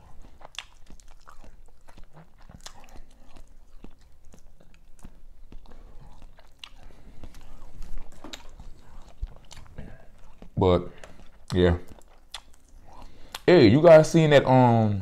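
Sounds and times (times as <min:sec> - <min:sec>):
chewing and biting seafood: 0:00.0 - 0:13.5
wet mouth clicks and crackles: 0:00.0 - 0:13.5.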